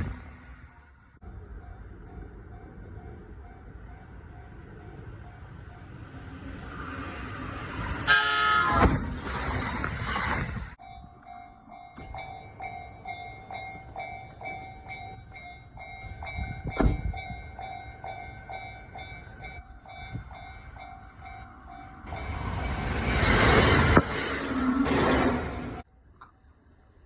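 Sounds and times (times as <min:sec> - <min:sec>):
level-crossing electronic bell: 0:10.8 - 0:23.0.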